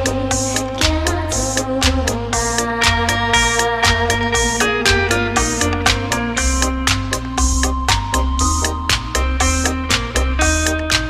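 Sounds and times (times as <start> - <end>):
electronic keyboard melody with band: 0.0 - 11.0.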